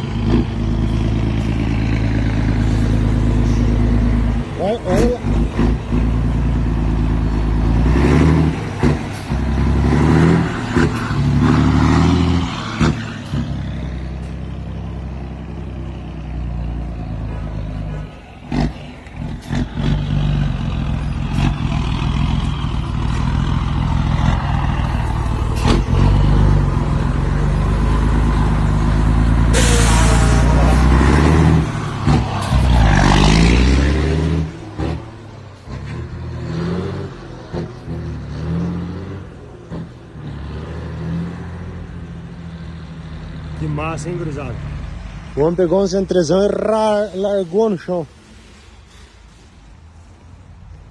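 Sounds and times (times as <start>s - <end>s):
truck diesel engine revving: 0.0s - 47.6s.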